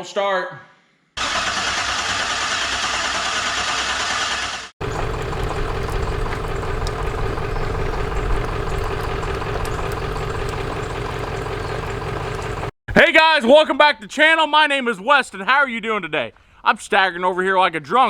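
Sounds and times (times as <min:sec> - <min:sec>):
engine running with low rumble: 0:04.8 - 0:12.8
hissy engine noise: 0:04.8 - 0:12.8.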